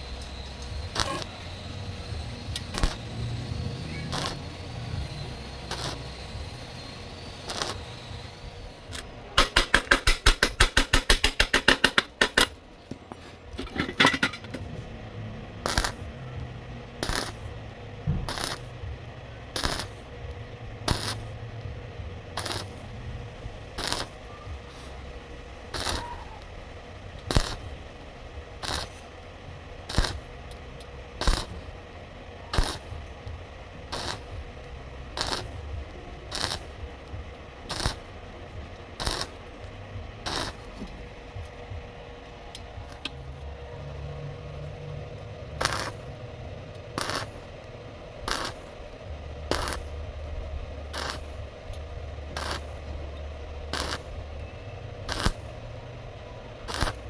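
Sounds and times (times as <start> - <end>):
short sharp bursts: 0.0 - 14.8, 15.6 - 16.4, 17.0 - 18.9, 19.5 - 20.2, 20.8 - 21.5, 22.4 - 23.0, 23.6 - 26.5, 27.3 - 27.8, 28.6 - 29.2, 29.8 - 30.4, 31.1 - 31.7, 32.5 - 33.1, 33.9 - 34.5, 35.1 - 36.8, 37.6 - 38.2, 39.0 - 39.5, 40.2 - 40.8, 45.6 - 46.2, 46.9 - 47.5, 48.3 - 48.9, 49.5 - 50.0, 50.9 - 51.4, 52.3 - 52.9, 53.7 - 54.2, 55.0 - 55.6, 56.7 - 57.0
low steady hum: 0.0 - 57.0.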